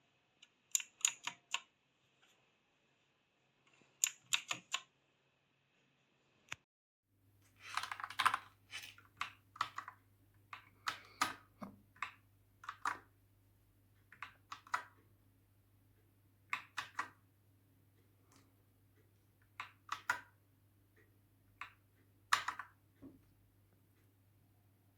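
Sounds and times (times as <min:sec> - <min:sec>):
mechanical keyboard typing: 0:07.6 - 0:13.1, 0:22.3 - 0:22.8.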